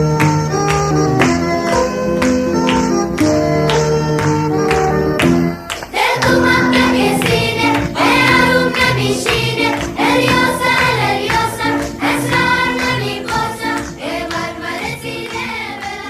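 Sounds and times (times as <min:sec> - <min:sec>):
group of voices singing: 0:05.9 - 0:16.0.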